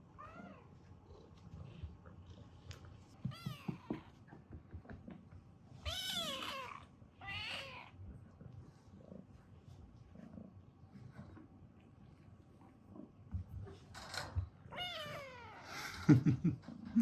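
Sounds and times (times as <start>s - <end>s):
kitten meowing: 5.9s - 7.9s.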